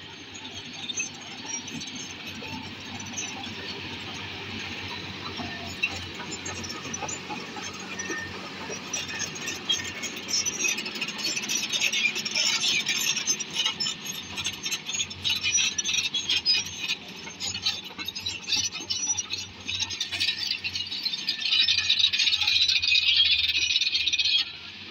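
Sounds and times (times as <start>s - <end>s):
crawler tracks rattling and squealing: 0.0s - 24.9s.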